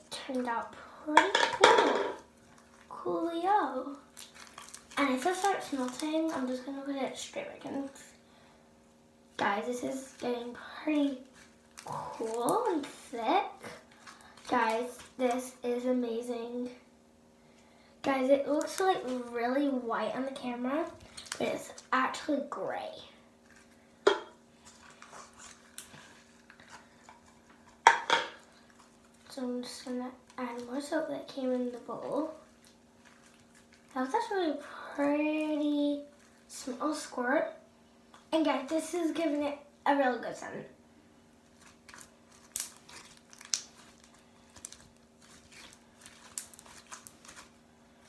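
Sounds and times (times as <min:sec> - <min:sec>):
faint steady hum: 0:00.0 - 0:48.0
slime squelching: 0:02.1 - 0:08.2, 0:09.4 - 0:15.8, 0:23.4 - 0:37.1, 0:41.4 - 0:48.0.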